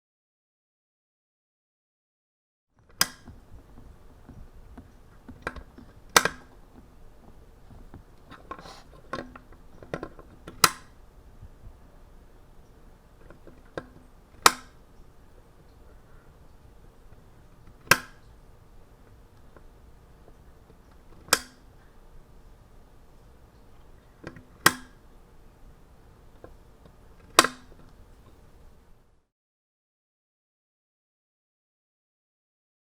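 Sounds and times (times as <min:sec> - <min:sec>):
lamp switch clicking: 0:03.0 - 0:03.5, 0:05.3 - 0:06.6, 0:08.2 - 0:11.0, 0:13.2 - 0:14.8, 0:17.6 - 0:18.3, 0:21.0 - 0:21.7, 0:24.2 - 0:25.0, 0:27.2 - 0:28.0.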